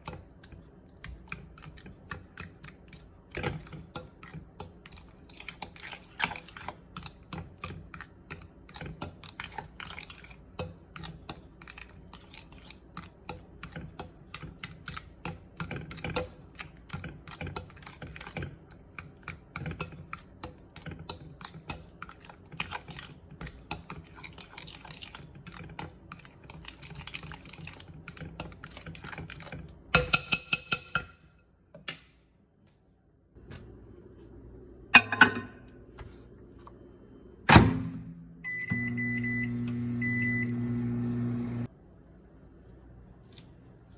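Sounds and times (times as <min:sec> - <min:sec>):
utensils tapping against a bowl: 0:00.0 - 0:31.3.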